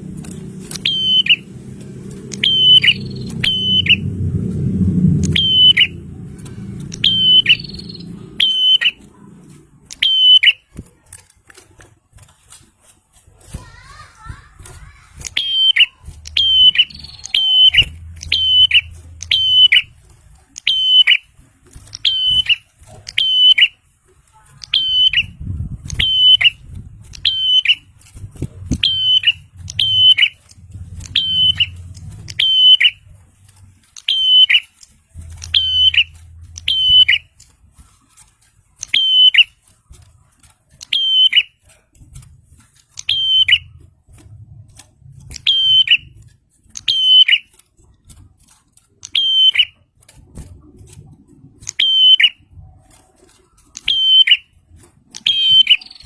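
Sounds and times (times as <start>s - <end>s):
faint low rumble: 0.0s - 10.0s, 10.6s - 20.6s, 23.9s - 34.0s, 34.8s - 38.7s
bird sharp repeated call: 0.7s - 1.5s, 2.3s - 4.0s, 5.2s - 6.0s, 6.9s - 9.0s, 15.2s - 19.9s, 22.0s - 23.8s, 28.8s - 30.4s, 31.2s - 33.0s, 34.0s - 34.8s, 35.4s - 37.3s, 55.2s - 56.0s.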